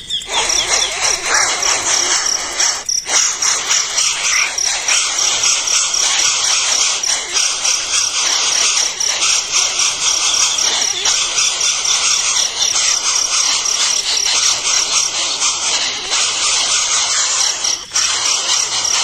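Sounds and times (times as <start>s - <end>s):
insect chorus chirring: 0.0s - 19.0s
high rapidly pulsing note: 0.3s - 15.3s.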